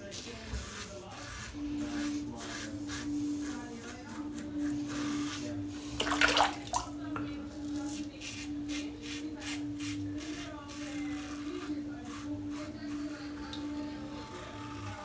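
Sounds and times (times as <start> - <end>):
razor scraping: 0.0 - 5.8, 7.6 - 15.0
tap water running: 6.0 - 7.3.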